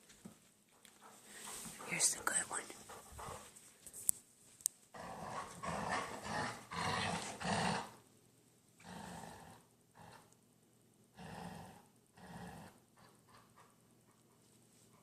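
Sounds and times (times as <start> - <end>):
dog growling in play: 4.9 - 8.0, 8.8 - 10.4, 11.1 - 13.6.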